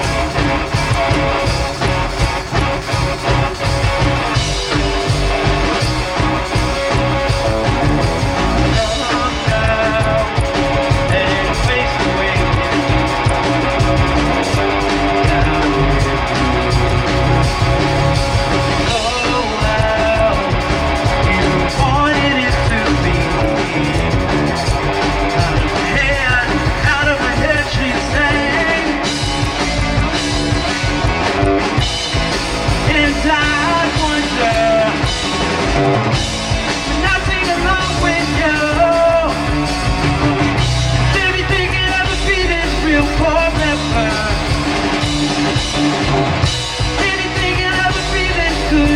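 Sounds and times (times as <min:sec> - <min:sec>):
drums: 0:00.0 - 0:48.9
electric guitar: 0:00.0 - 0:48.9
person singing: 0:08.4 - 0:29.2, 0:32.8 - 0:35.2, 0:36.9 - 0:44.7, 0:46.8 - 0:48.9.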